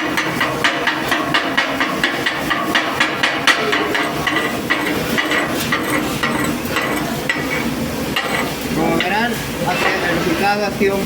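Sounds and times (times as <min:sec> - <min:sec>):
hammer striking metal: 0:00.0 - 0:07.6.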